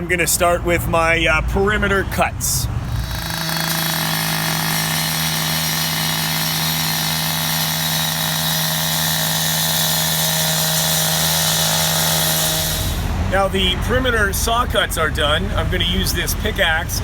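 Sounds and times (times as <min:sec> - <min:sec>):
saw blade grinding asphalt: 0:01.9 - 0:16.8
saw engine running at high speed: 0:02.8 - 0:13.8.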